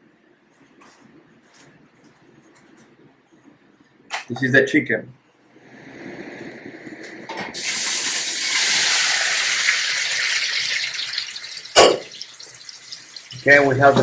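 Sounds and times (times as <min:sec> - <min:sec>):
potatoes sizzling in hot oil: 0:07.6 - 0:14.0.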